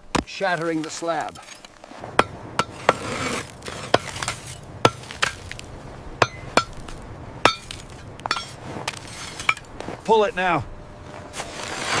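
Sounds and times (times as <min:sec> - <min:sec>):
metal tool striking ice: 0:01.2 - 0:05.6, 0:06.2 - 0:09.7.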